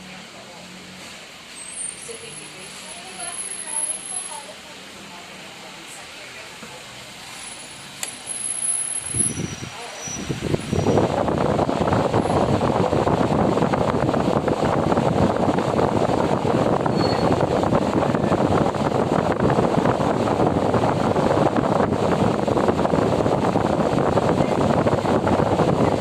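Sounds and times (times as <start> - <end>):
fan rushing air: 0.0 - 26.0
wind noise on microphone: 8.9 - 26.0.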